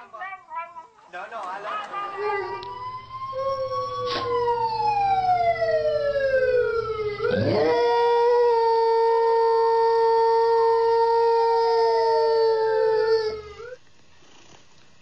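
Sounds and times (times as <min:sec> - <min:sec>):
dog howling: 0:02.0 - 0:13.8
siren wailing: 0:02.0 - 0:13.8.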